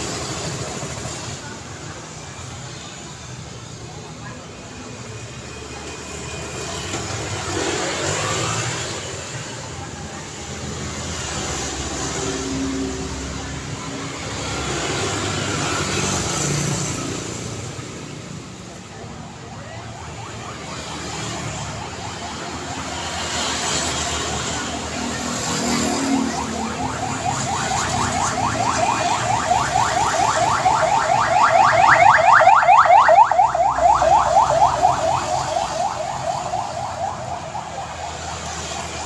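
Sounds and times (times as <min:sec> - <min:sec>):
road traffic noise: 0:00.0 - 0:39.0
electronic warning siren whooping: 0:18.8 - 0:39.0.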